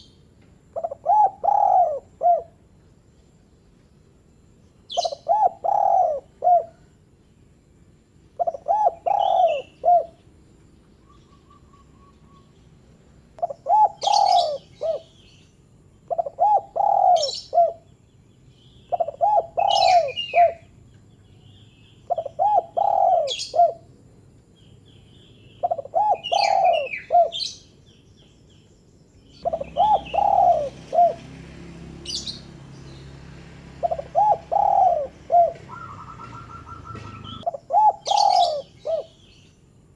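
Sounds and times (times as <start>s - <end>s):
small birds chirping: 0.0s - 4.0s, 4.6s - 7.4s, 8.4s - 39.9s
dove cooing: 0.7s - 2.6s, 4.9s - 6.9s, 8.4s - 10.2s, 13.4s - 15.2s, 16.1s - 17.9s, 18.9s - 20.7s, 22.1s - 23.9s, 25.6s - 27.6s, 29.4s - 39.3s.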